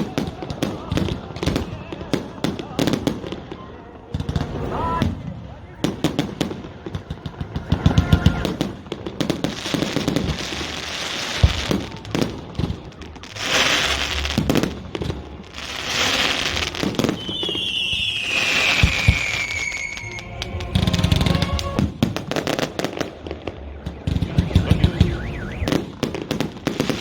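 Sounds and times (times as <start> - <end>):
fireworks booms and pops: 0.0 - 27.0
fireworks crackling hiss: 6.2 - 23.6, 24.4 - 27.0
falling firework whistle: 15.8 - 26.2.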